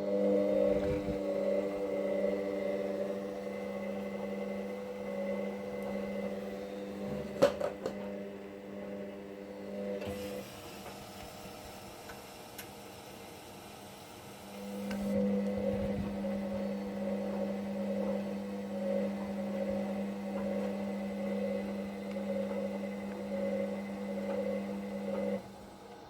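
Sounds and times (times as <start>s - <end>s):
machine motor humming: 0.0s - 26.0s.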